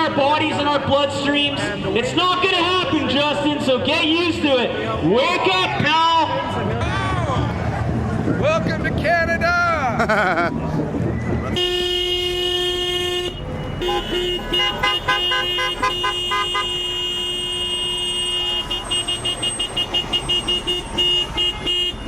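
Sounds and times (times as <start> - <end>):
vehicle horns honking: 11.6 - 22.0.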